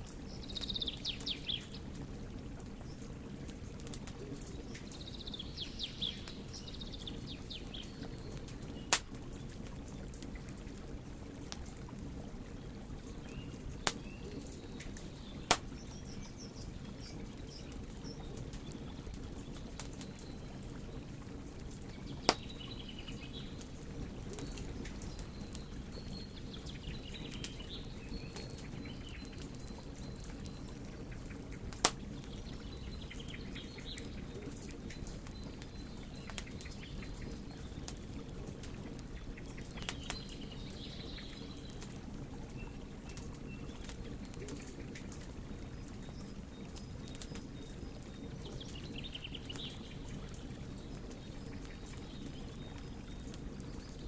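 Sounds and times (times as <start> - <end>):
small birds chirping: 0.0 - 54.0
wood fire crackling: 0.0 - 54.0
sharp pops from fire: 7.8 - 10.3, 13.7 - 16.0, 21.7 - 22.7, 31.6 - 32.3, 34.6 - 36.7, 39.4 - 40.4.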